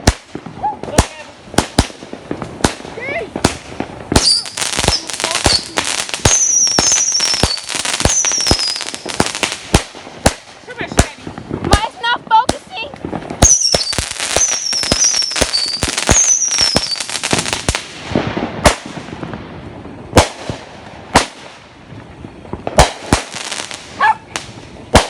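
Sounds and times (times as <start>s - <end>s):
fireworks bangs and crackling: 0.0s - 25.0s
fireworks whistles falling in pitch: 4.1s - 9.2s, 13.4s - 17.2s.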